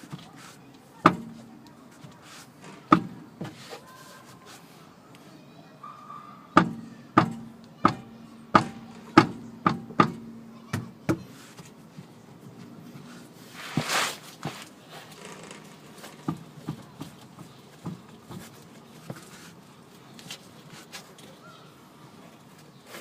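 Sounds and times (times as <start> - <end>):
scraping rustle: 0.0 - 4.9, 11.3 - 21.5, 22.1 - 23.0.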